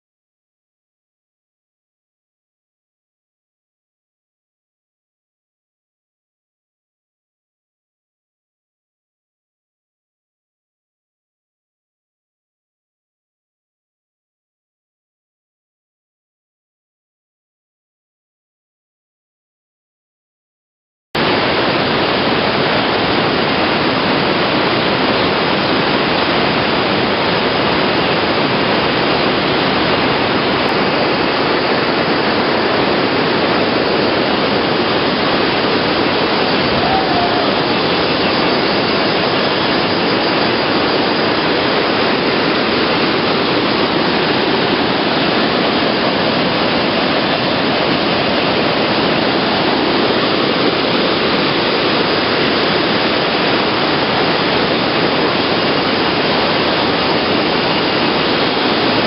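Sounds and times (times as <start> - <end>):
waterfall rushing: 21.2 - 59.0.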